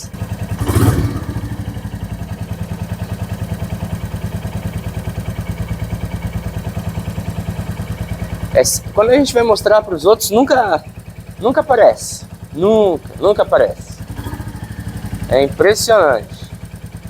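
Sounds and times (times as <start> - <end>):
motorcycle engine idling: 0.0 - 17.0
motorcycle engine blip: 14.0 - 15.3.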